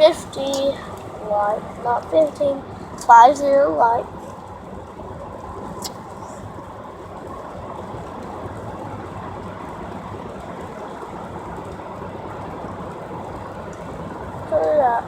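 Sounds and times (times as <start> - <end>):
low rumbling noise with hiss: 0.0 - 15.0.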